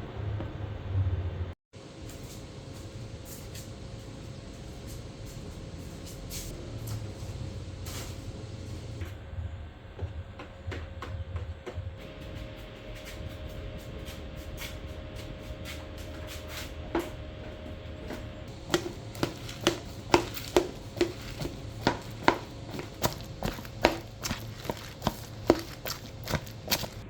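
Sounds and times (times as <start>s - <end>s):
knife chopping on cutting board: 18.5s - 27.0s.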